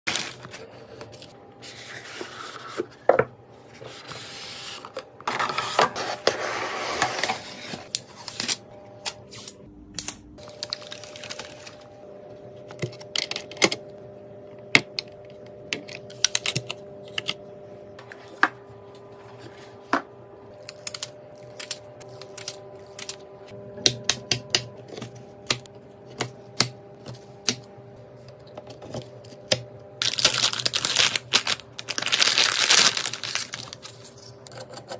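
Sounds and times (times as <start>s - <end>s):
packaging rustling: 0.1s - 3.1s, 10.4s - 11.9s, 30.0s - 34.4s.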